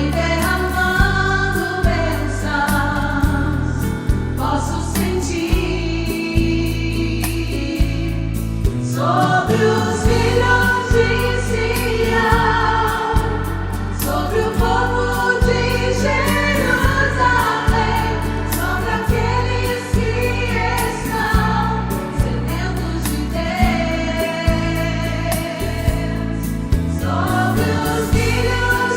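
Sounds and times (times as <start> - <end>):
people singing worship song: 0.0 - 28.9
band with pulsing bass and beat: 9.6 - 28.9.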